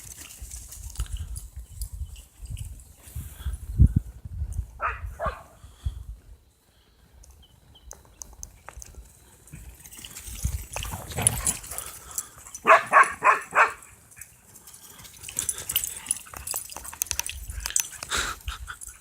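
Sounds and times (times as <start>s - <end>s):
dog barking: 4.8s - 5.6s, 12.6s - 13.9s
clicks and scuffling: 13.8s - 18.2s.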